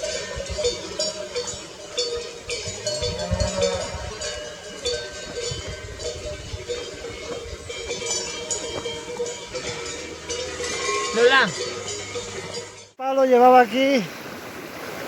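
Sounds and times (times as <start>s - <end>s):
cowbells clanking: 0.0s - 13.0s
low rumble: 2.8s - 4.5s.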